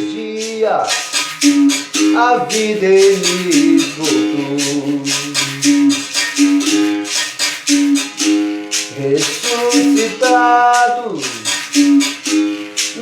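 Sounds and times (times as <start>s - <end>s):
person singing: 0.0s - 6.6s, 8.9s - 12.0s
berimbau playing: 0.0s - 13.0s
shaker rattle: 0.0s - 13.0s.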